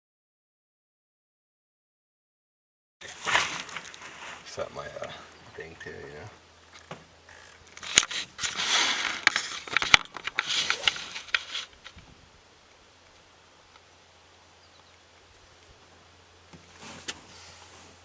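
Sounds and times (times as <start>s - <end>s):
gear rustling and scraping: 3.0s - 12.0s, 16.6s - 18.0s.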